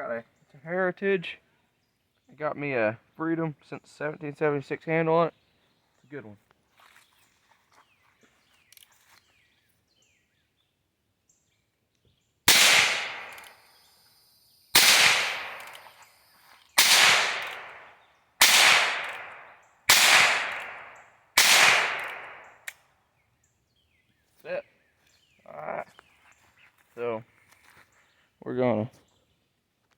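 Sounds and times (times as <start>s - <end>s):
revolver shots sharp cracks: 12.5s - 13.6s, 14.8s - 16.0s, 16.8s - 22.6s.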